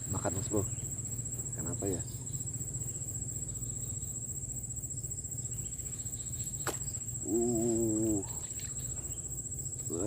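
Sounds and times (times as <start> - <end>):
crickets trilling: 0.0 - 10.0
person humming uh: 7.2 - 8.4.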